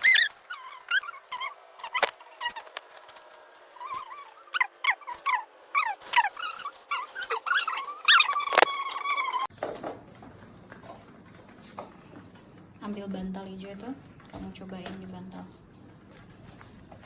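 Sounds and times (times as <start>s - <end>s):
dog whimpering: 0.0s - 2.8s, 3.7s - 9.5s.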